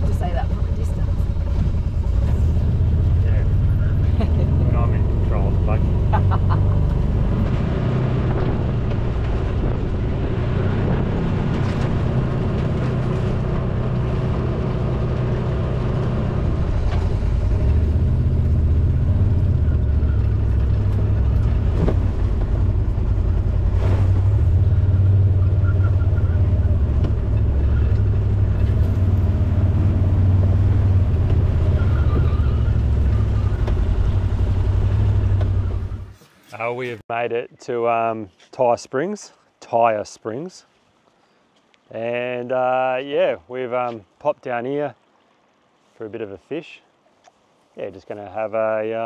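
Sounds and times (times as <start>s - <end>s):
buggy engine rumbling: 0.0s - 37.0s.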